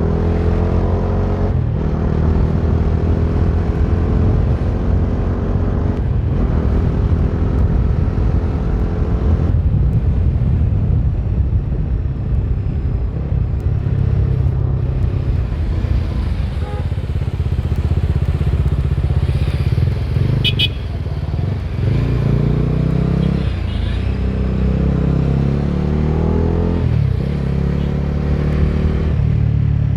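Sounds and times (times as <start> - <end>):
motorcycle engine rumbling: 4.1 - 25.5.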